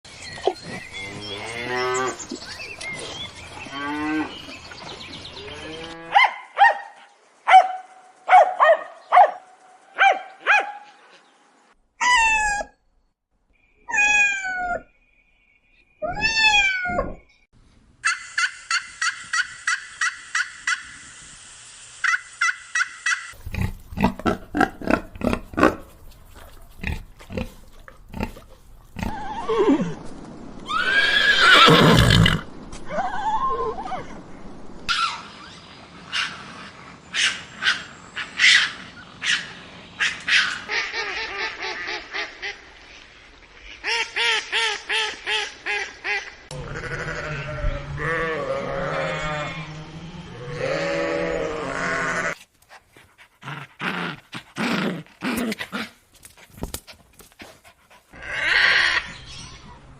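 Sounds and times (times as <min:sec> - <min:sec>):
farm animal calls: 0:58.1 - 0:59.8.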